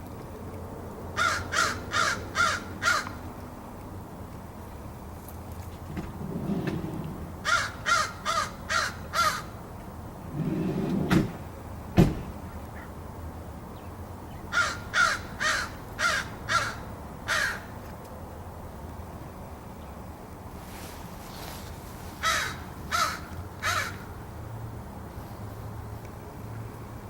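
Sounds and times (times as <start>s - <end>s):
crow cawing: 1.2s - 3.2s, 7.4s - 9.5s, 14.5s - 17.7s, 22.2s - 24.1s.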